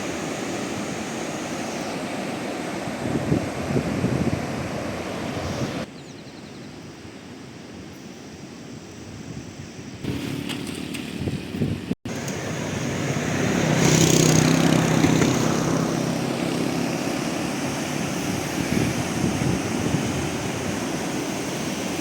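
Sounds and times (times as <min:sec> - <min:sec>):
steady rushing noise: 0:11.7 - 0:22.0
vehicle engine hum: 0:12.1 - 0:18.9.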